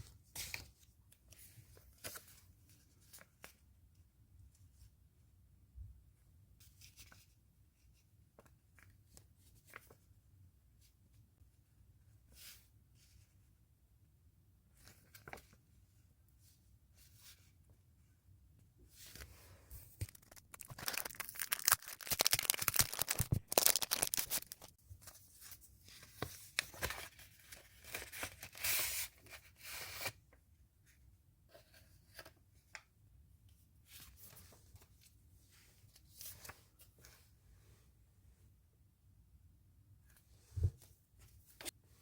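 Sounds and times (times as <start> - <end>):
faint handling sounds: 14.7 - 38.6
packaging being torn open: 20.0 - 24.7.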